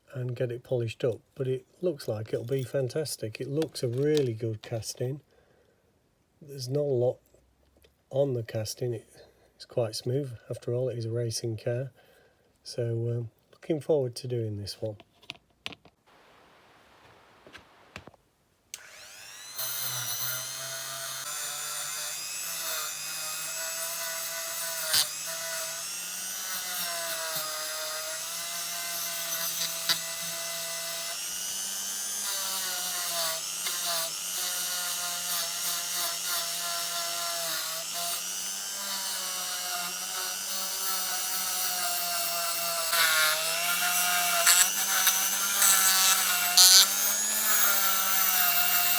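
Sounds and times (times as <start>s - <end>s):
rotary tool whining on metal: 18.7s - 48.9s.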